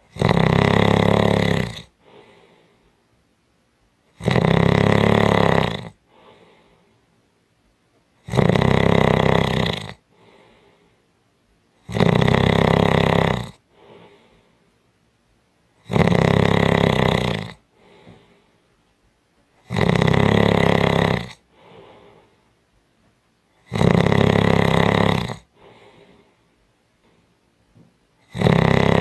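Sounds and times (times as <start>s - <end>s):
person snoring: 0.0s - 2.7s, 4.1s - 6.8s, 8.2s - 10.8s, 11.8s - 14.5s, 15.8s - 18.4s, 19.6s - 22.4s, 23.6s - 26.4s, 28.2s - 29.0s
soft breathing: 1.9s - 3.2s, 6.0s - 7.2s, 10.1s - 11.2s, 13.6s - 14.9s, 17.6s - 18.9s, 21.4s - 22.7s, 25.4s - 27.4s.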